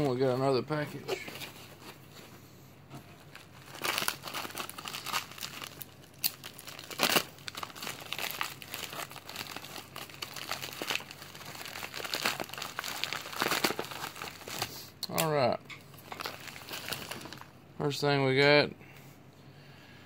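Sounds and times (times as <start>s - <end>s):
packaging crinkling and tearing: 3.2s - 17.5s.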